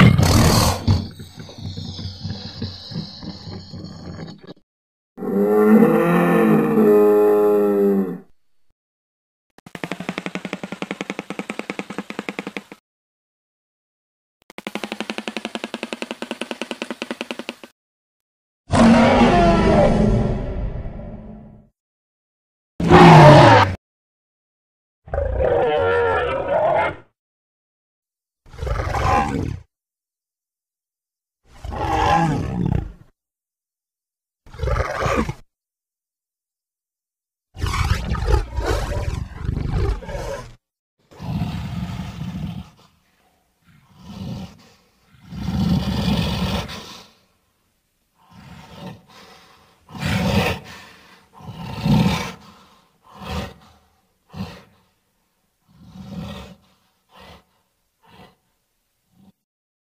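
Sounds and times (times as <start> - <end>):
person imitating dinosaur roars: 5.2 - 8.3, 18.7 - 20.5.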